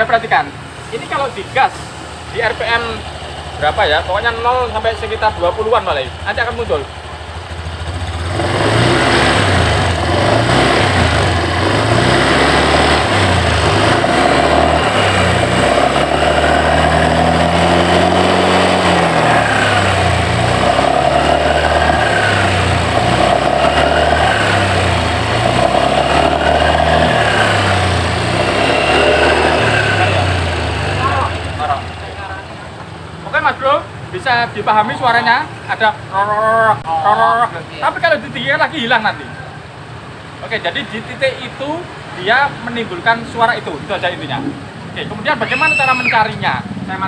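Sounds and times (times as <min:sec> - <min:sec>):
scooter engine revving: 0:01.7 - 0:33.8.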